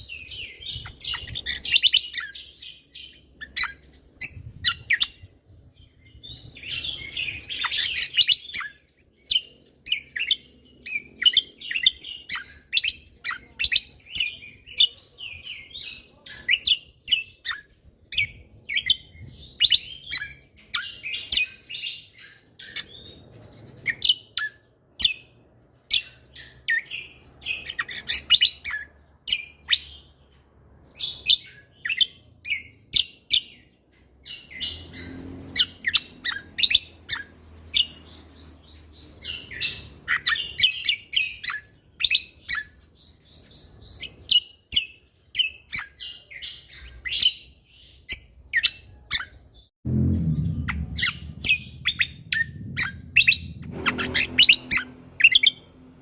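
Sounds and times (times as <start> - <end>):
songbird singing rapid chirps: 0.0 - 56.0.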